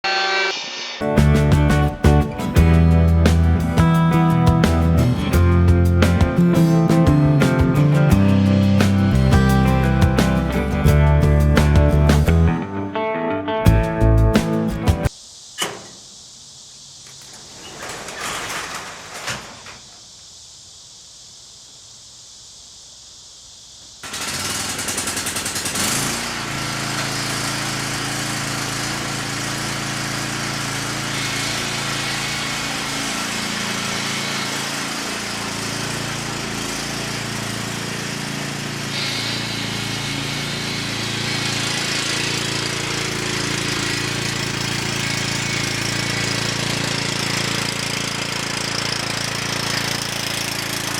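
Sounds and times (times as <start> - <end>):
machine motor running: 24.0 - 50.9.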